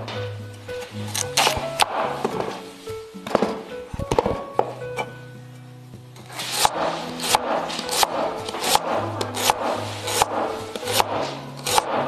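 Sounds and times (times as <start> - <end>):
background music: 0.0 - 12.0
knife shredding radish: 0.7 - 2.6, 6.2 - 12.0.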